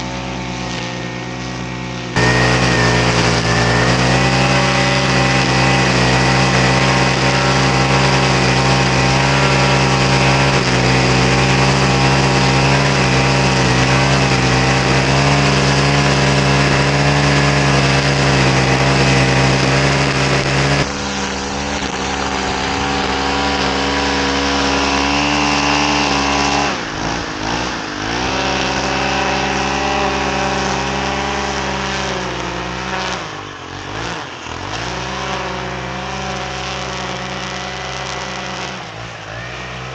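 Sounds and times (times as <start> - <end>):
small gas engine running: 0.0 - 39.9.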